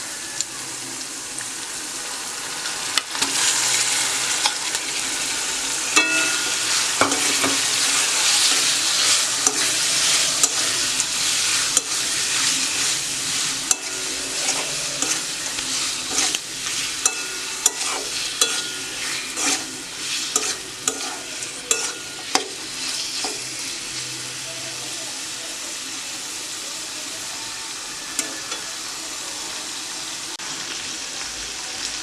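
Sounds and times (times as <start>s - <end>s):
food sizzling in hot oil: 0.0s - 32.0s
metal spatula scraping a pan: 5.9s - 23.7s.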